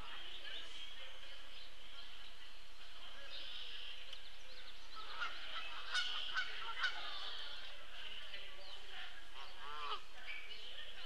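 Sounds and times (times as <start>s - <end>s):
distant birds chorus: 0.0s - 11.0s
small birds chirping: 0.0s - 11.0s
goose honking: 5.0s - 7.5s, 9.4s - 10.0s.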